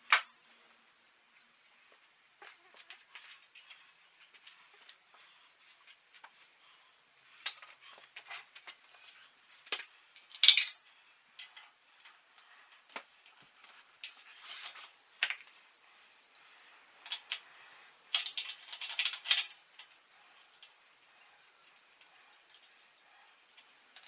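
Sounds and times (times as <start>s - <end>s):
metal tools clicking and clinking: 7.4s - 10.8s, 18.1s - 20.0s.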